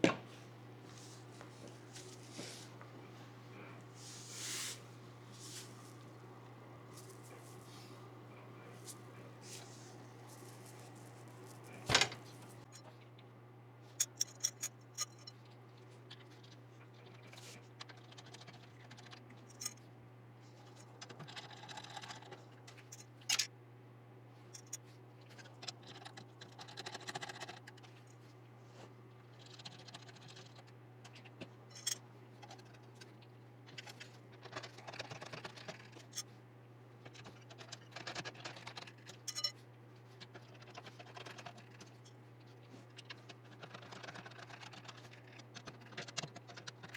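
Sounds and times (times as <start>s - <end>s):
steady low hum: 0.0s - 46.9s
computer parts clicking and scraping: 14.0s - 15.4s, 24.6s - 24.8s, 33.7s - 36.3s, 37.1s - 39.6s, 40.2s - 42.2s, 43.0s - 46.9s.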